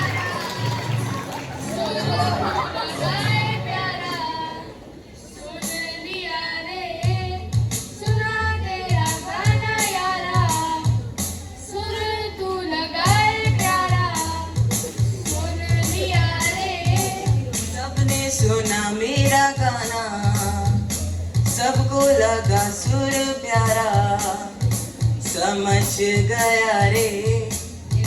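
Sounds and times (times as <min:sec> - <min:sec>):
backing track: 0:00.0 - 0:04.7, 0:07.0 - 0:28.0
young person singing: 0:00.0 - 0:04.8, 0:05.4 - 0:28.0
low beat: 0:13.1 - 0:28.0.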